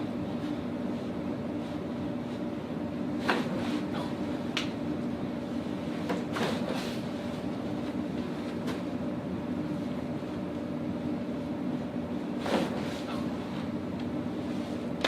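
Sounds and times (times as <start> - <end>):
room hum: 0.0 - 15.0
rustling stretch: 12.3 - 13.7.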